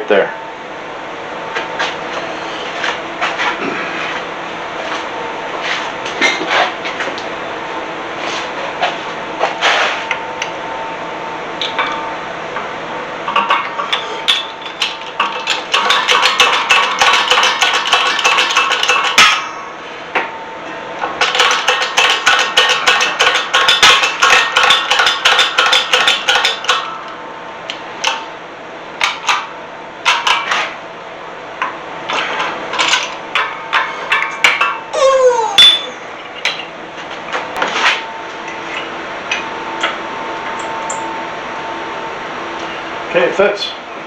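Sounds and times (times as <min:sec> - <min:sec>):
hammer striking metal: 0:13.3 - 0:20.3, 0:21.2 - 0:27.1, 0:32.8 - 0:34.9, 0:35.6 - 0:36.7.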